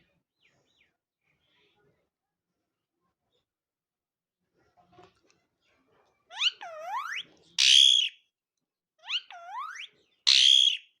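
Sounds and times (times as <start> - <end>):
parrot harsh squawk: 6.3 - 8.2, 9.0 - 11.0.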